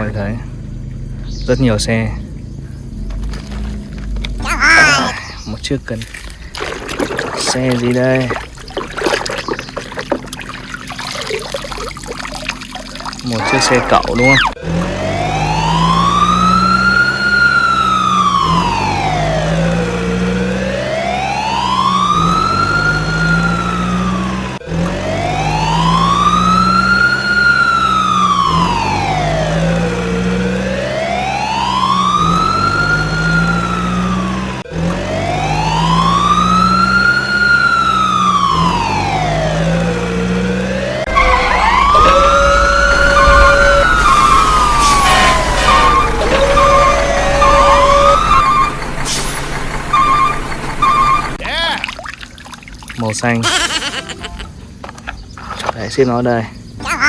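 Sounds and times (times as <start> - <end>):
electronic siren wailing: 13.2 - 48.9, 49.9 - 51.4.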